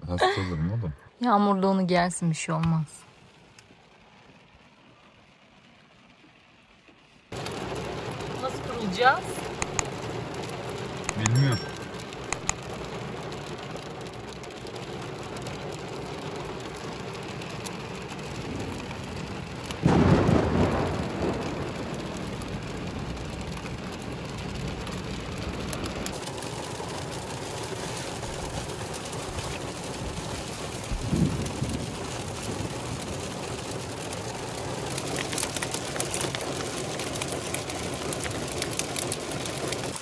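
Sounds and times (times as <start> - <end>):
heavy rain: 1.3 - 40.0
thunder clap: 18.2 - 40.0.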